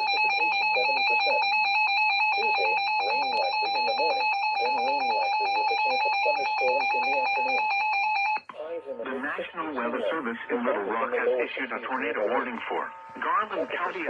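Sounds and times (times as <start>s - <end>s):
loud steady electronic alert tone: 0.0s - 8.5s.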